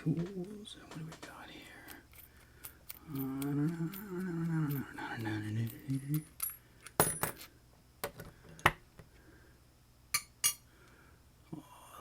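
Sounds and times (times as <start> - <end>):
small metal tools clinking: 0.4 - 7.5.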